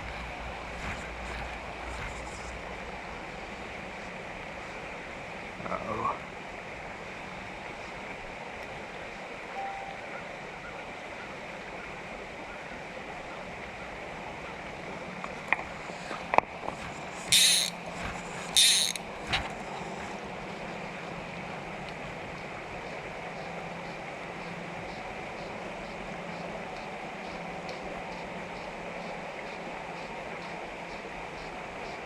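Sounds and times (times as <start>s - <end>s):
stream flowing: 0.0s - 5.6s, 6.2s - 32.0s
loud hissing bursts: 17.2s - 19.0s
sharp clicks: 18.6s - 19.0s.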